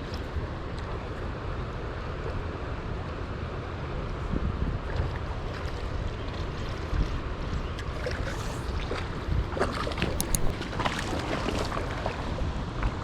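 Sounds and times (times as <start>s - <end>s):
rushing water: 0.0s - 13.0s
wind rumble on microphone: 0.0s - 13.0s
short clicks: 10.1s - 10.5s.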